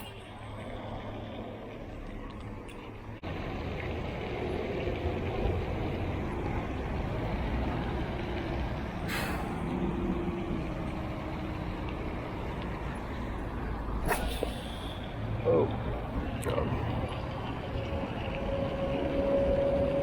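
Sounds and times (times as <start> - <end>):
heavy road vehicle rumbling by: 3.2 - 20.0.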